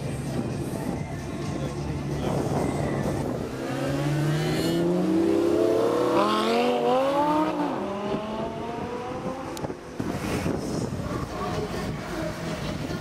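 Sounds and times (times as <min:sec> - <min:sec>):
car engine accelerating hard: 0:03.1 - 0:09.9.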